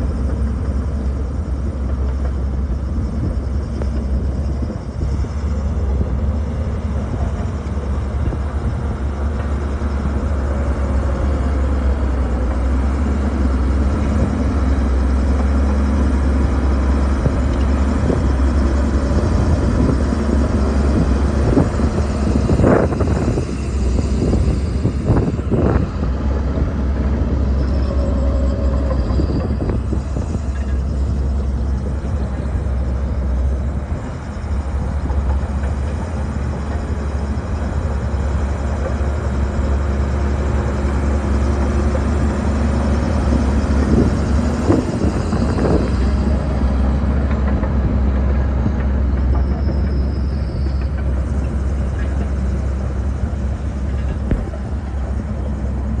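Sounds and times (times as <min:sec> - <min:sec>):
bulldozer diesel engine rumbling: 0:00.0 - 0:56.0
machine knocks and clanks: 0:53.8 - 0:55.8.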